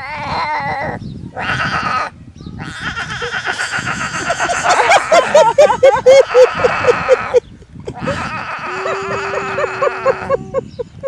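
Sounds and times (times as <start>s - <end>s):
animal wavering cries: 0.0s - 5.2s, 8.0s - 10.6s.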